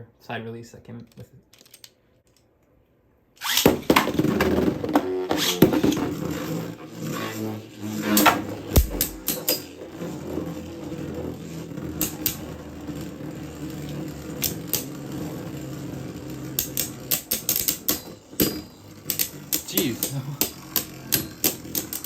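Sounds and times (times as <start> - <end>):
spinning tops humming: 5.1 - 22.0
spinning tops clacking together: 15.6 - 22.0.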